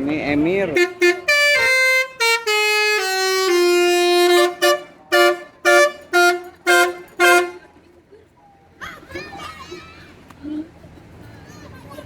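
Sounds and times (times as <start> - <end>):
multi-tone bus air horn tune: 0.7 - 7.9.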